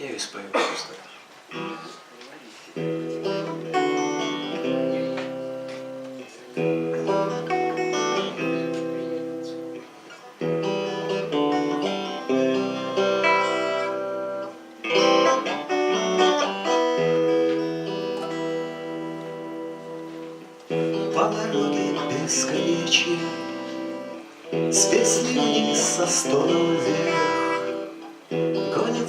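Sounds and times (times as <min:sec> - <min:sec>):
acoustic guitar chords: 0:01.5 - 0:02.1, 0:02.7 - 0:29.0.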